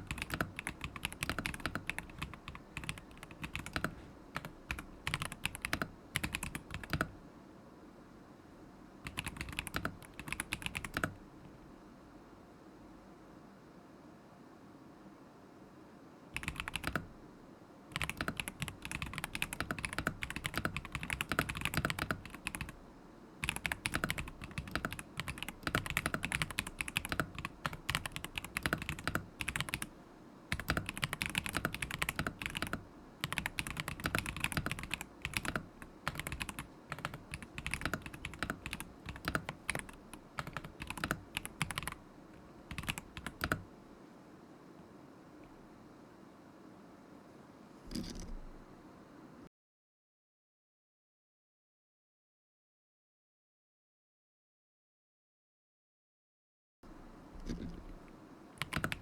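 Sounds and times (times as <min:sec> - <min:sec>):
mechanical keyboard typing: 0:00.0 - 0:07.2, 0:09.0 - 0:11.2, 0:16.4 - 0:17.1, 0:18.0 - 0:22.8, 0:23.4 - 0:29.9, 0:30.5 - 0:42.0, 0:42.7 - 0:43.7, 0:58.6 - 0:59.0.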